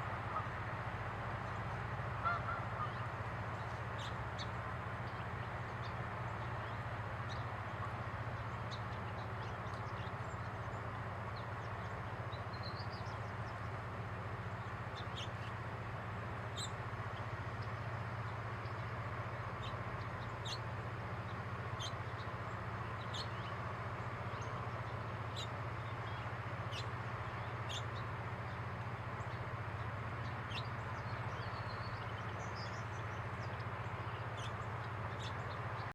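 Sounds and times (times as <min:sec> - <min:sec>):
low background rumble: 0:00.0 - 0:35.9
finch chirping: 0:14.5 - 0:15.6, 0:16.5 - 0:16.8, 0:19.5 - 0:23.6, 0:24.2 - 0:28.6, 0:30.2 - 0:35.9.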